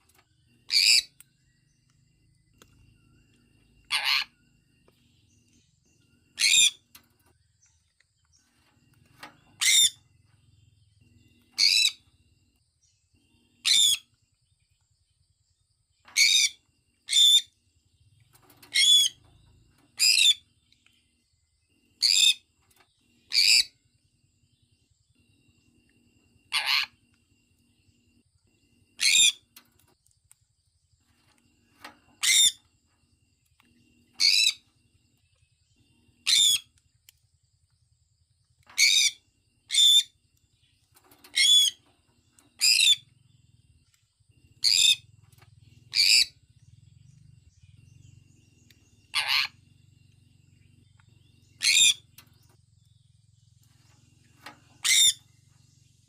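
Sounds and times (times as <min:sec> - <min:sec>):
parrot calling loudly: 0:03.9 - 0:04.3, 0:26.5 - 0:26.9, 0:49.1 - 0:49.6, 0:51.6 - 0:52.0, 0:54.8 - 0:55.2.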